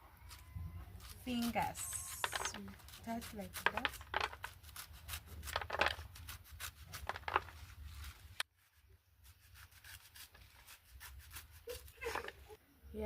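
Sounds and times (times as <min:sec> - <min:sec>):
leafy vegetables being cut: 0:00.2 - 0:02.1, 0:04.5 - 0:07.2, 0:09.2 - 0:12.2.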